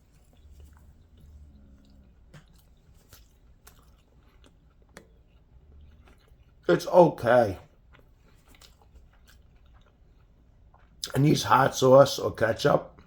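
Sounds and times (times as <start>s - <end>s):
person chewing: 0.0s - 11.3s.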